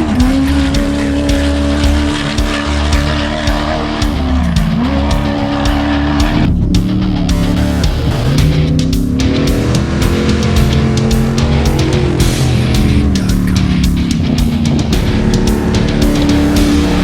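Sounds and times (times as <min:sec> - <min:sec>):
background music with steady beat: 0:00.0 - 0:17.0
race vehicle engine revving: 0:00.0 - 0:17.0.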